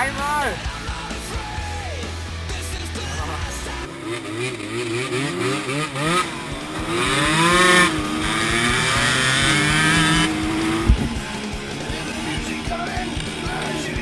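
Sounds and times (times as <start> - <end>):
dirt bike engine revving: 0.0 - 14.0.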